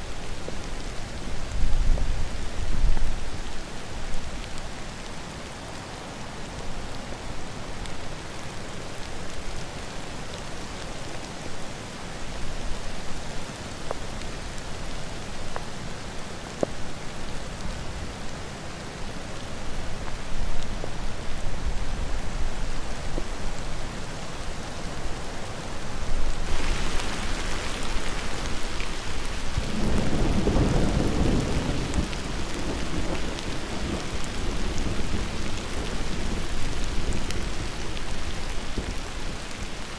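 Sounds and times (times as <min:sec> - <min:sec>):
steady rain: 0:00.0 - 0:39.9
low rumble of thunder: 0:26.5 - 0:39.2.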